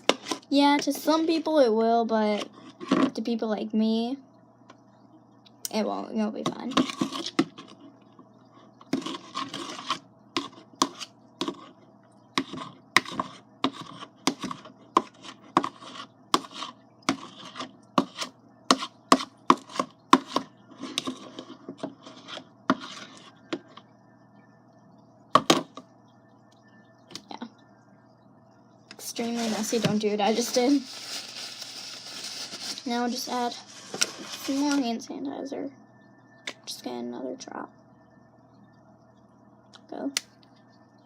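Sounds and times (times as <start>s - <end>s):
utensil knocking and scraping bowl: 0.0s - 0.9s, 8.9s - 11.8s, 12.4s - 23.8s.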